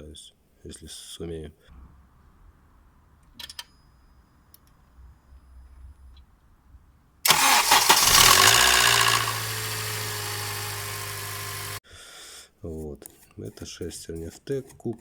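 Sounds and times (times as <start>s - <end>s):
car engine cold start crackle: 7.3s - 11.8s
car engine idling: 7.3s - 11.8s.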